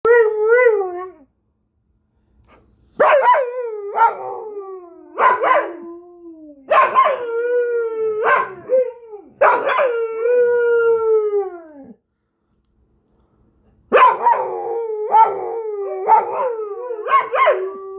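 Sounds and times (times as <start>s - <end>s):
dog howling: 3.2s - 12.0s, 14.1s - 17.9s.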